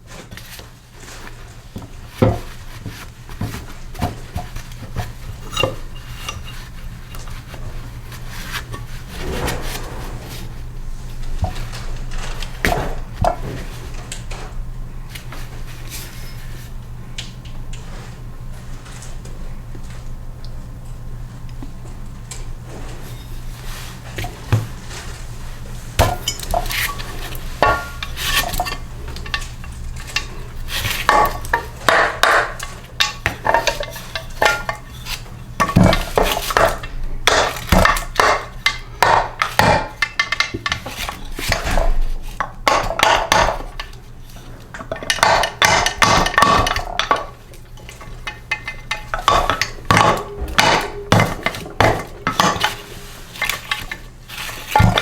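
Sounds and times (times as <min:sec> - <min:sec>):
steady low hum: 0:00.0 - 0:55.0
engine parts and tools clinking: 0:26.0 - 0:55.0.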